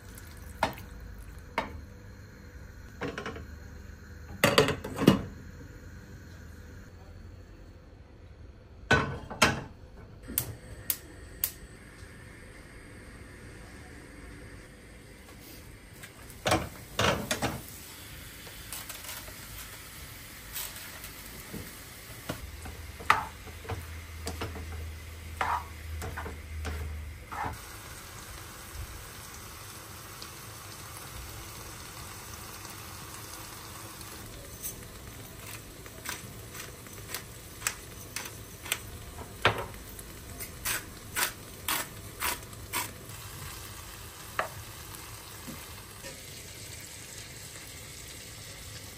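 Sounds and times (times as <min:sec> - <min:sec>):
faint sizzle: 0:00.0 - 0:08.8, 0:09.8 - 0:48.9.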